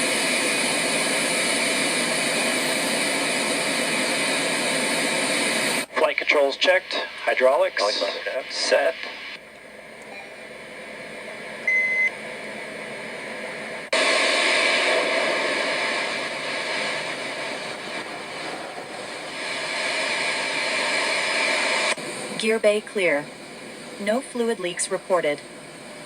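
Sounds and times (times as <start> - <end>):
jet engine noise: 0.0 - 26.0
short electronic beep: 11.7 - 12.1.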